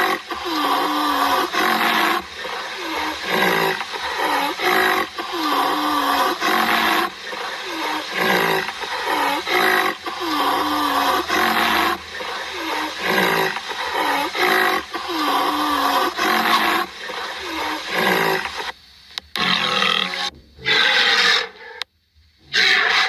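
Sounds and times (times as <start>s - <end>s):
large animal roaring: 0.0s - 18.5s.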